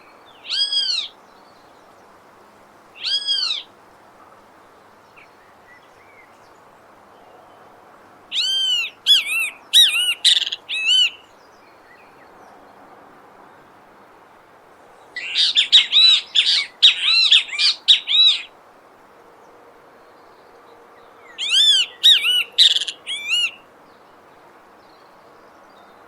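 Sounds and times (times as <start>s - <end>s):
bird calling: 0.0s - 1.2s, 3.0s - 3.7s, 8.3s - 11.3s, 15.2s - 18.5s, 21.4s - 23.6s
faint background noise: 0.0s - 26.0s.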